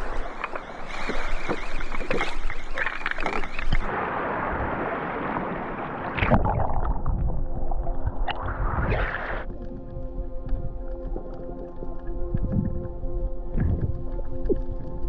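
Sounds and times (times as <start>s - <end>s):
seawater splashing: 0.0s - 9.9s.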